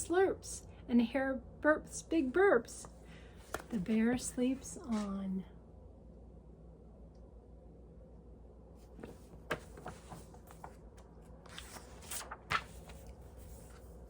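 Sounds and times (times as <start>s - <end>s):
book pages rustling: 3.4s - 3.8s, 8.8s - 14.0s.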